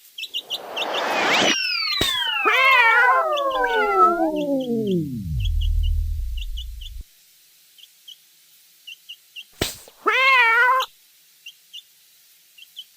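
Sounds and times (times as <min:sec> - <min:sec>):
cartoon cat meowing: 0:02.0 - 0:07.0, 0:10.0 - 0:10.9
low rumble: 0:03.4 - 0:07.0.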